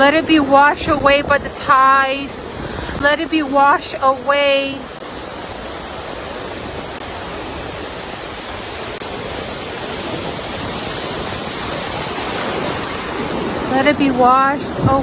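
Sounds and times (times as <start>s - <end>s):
rush of moving water: 0.0s - 15.0s.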